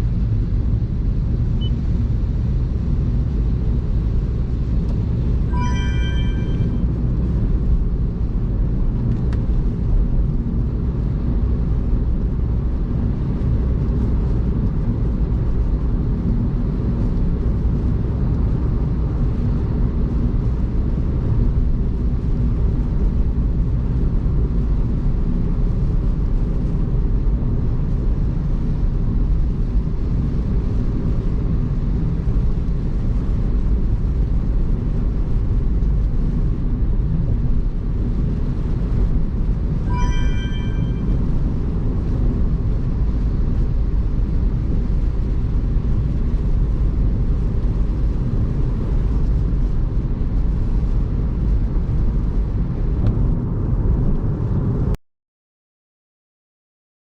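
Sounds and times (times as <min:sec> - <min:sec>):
car engine and tyre noise: 0:00.0 - 0:55.0
short electronic chime: 0:05.5 - 0:07.0, 0:39.8 - 0:41.3.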